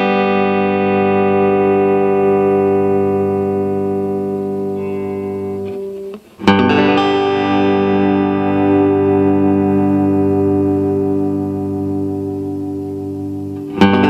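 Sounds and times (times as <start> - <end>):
clean electric guitar chords: 0.0 - 14.0.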